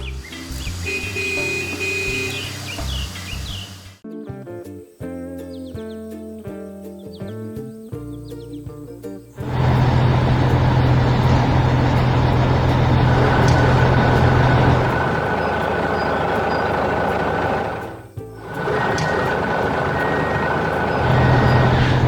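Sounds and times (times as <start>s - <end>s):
heavy machine engine running: 9.4s - 22.0s.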